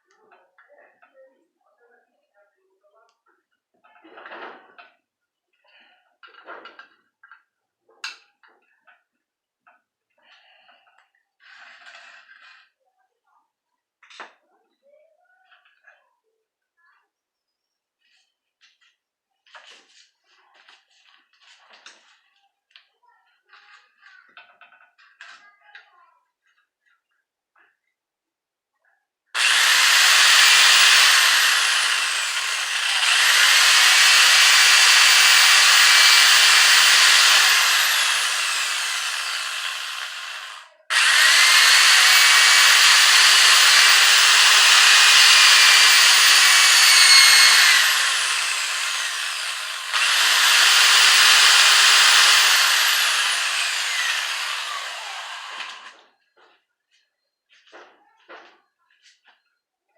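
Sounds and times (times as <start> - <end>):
electric power tool spinning: 29.4 - 56.0.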